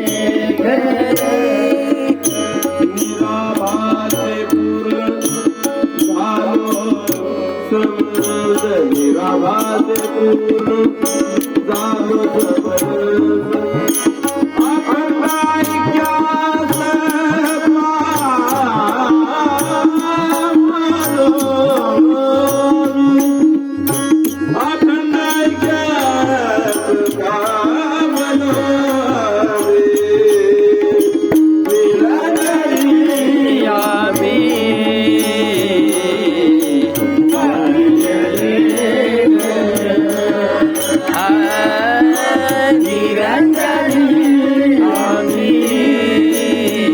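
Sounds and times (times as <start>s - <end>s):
cymbal rhythm: 0.0s - 10.3s
tabla rhythm: 0.0s - 46.9s.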